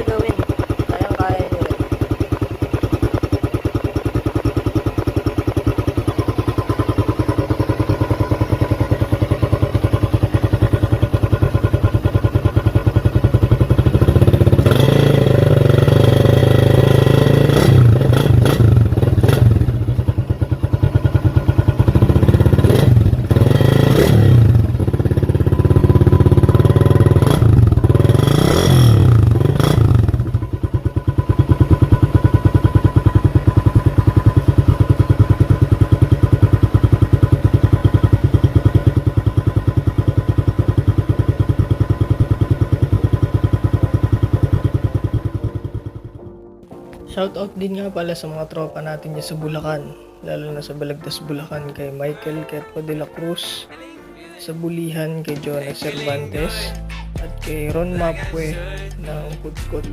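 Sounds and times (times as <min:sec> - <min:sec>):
motorcycle engine idling and revving: 0:00.0 - 0:46.4.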